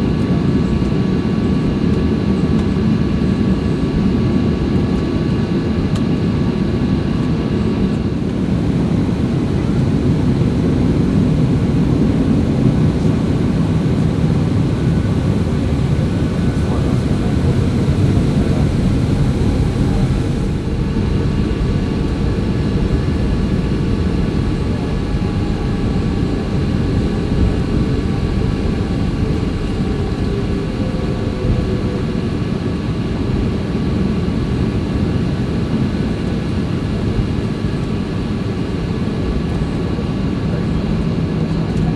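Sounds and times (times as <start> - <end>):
jet engines rumbling in cabin: 0.0 - 41.9
faint whining tones: 12.9 - 32.5.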